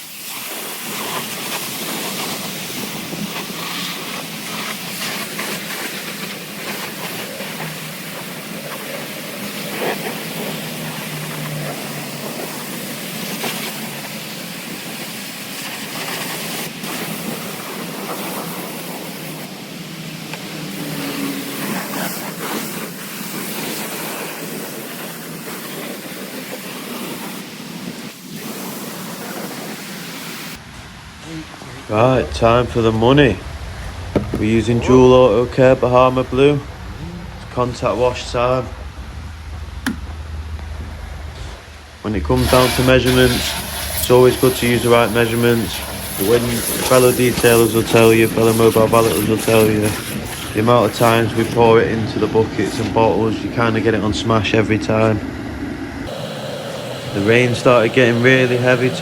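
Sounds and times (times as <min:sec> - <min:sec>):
pressure washer spraying: 0:00.0 - 0:30.6, 0:42.3 - 0:51.8, 0:56.1 - 0:59.0
low hum: 0:30.6 - 0:42.4, 0:55.2 - 0:59.0.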